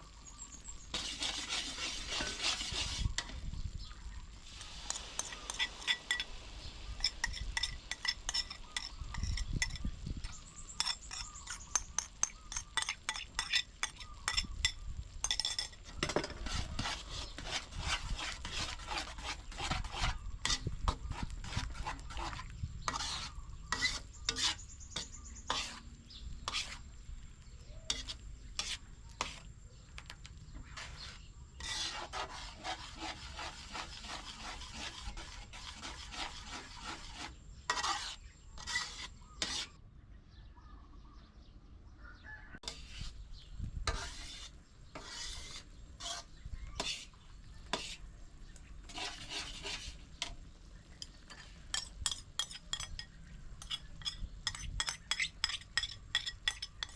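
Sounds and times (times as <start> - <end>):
utensil scraping and stirring bowl: 0.8 - 3.7, 4.4 - 39.8, 42.6 - 56.9.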